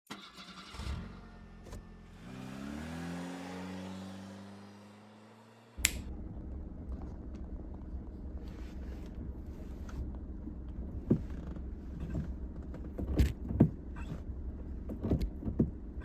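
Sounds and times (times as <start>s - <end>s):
car engine revving: 0.1s - 16.0s
sharp click: 5.8s - 6.1s.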